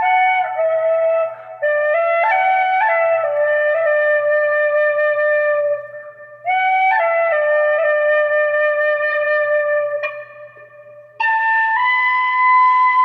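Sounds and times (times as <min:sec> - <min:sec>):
soft flute melody: 0:00.0 - 0:13.0.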